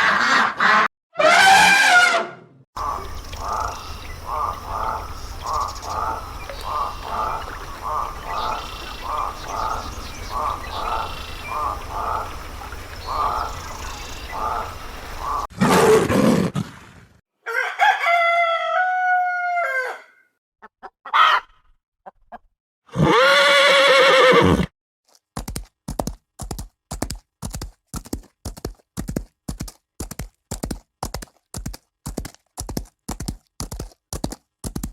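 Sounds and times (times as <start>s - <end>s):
long loud animal call: 2.8s - 15.5s, 22.9s - 24.6s
rhythmic pulsing animal call: 2.8s - 15.5s
rooster crowing: 17.4s - 20.2s
horse hooves clip-clopping: 25.1s - 34.9s.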